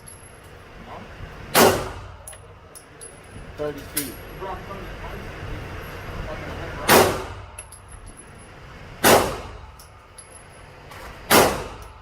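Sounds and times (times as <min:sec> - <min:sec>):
gunshots with echo: 0:06.9 - 0:07.4, 0:09.0 - 0:09.6, 0:11.3 - 0:11.8.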